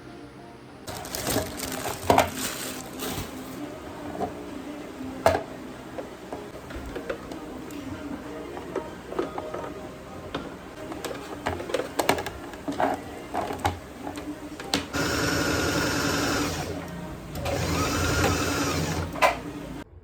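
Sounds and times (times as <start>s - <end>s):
small electric motor running: 15.0s - 16.8s, 17.4s - 19.8s.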